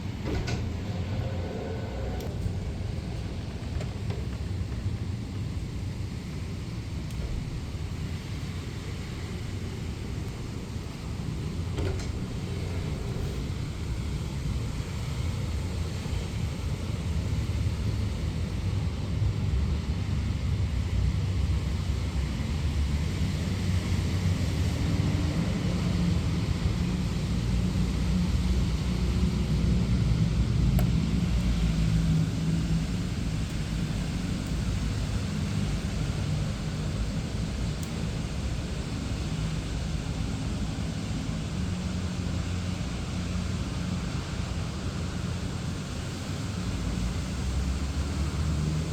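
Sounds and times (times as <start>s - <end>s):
rain hiss: 0.0s - 48.9s
vehicle rumble: 0.0s - 48.9s.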